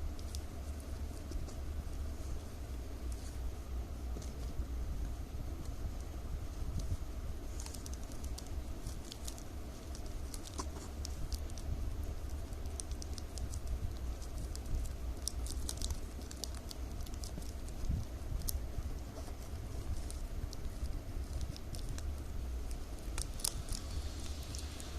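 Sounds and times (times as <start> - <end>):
low steady hum: 0.0 - 24.9
plastic strips crinkling: 7.5 - 24.9.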